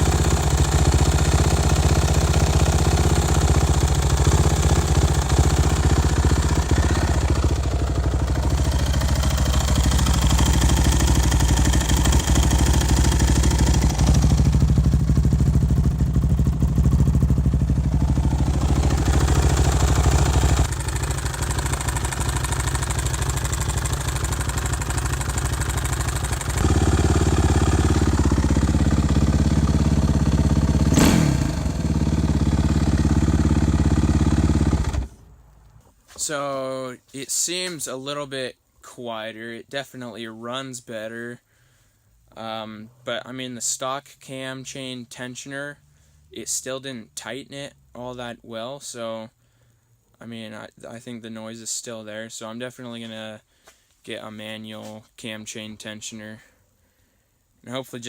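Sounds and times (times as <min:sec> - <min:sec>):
motorcycle engine idling: 0:00.0 - 0:35.5.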